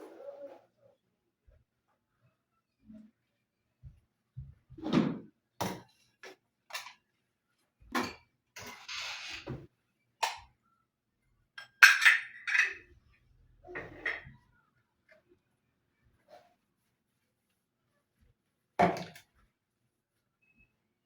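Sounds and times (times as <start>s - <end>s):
objects clicking and clinking: 11.6s - 12.8s.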